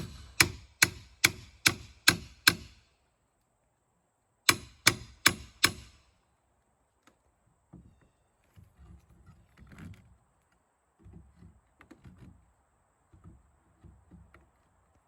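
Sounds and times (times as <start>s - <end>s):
hammer striking pry bar: 0.0s - 2.8s, 4.5s - 6.0s.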